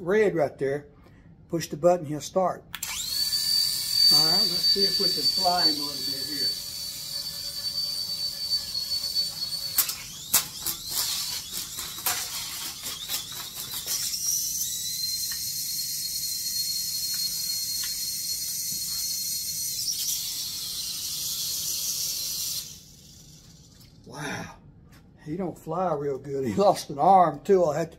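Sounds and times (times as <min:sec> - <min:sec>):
toy helicopter rotors whining: 0:02.8 - 0:24.0.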